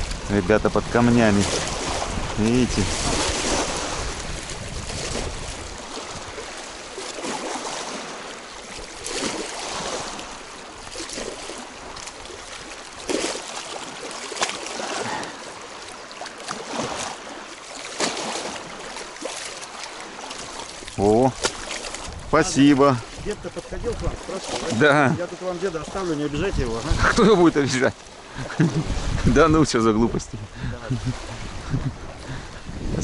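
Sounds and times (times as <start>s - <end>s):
waves lapping on stony shore: 0.0s - 33.0s
wind rushing: 28.7s - 33.0s.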